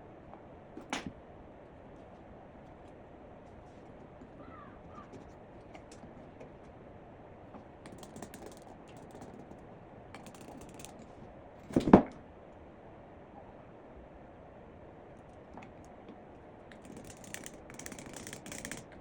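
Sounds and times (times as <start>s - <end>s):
light clicks and rattles: 7.8s - 12.0s, 16.7s - 19.0s.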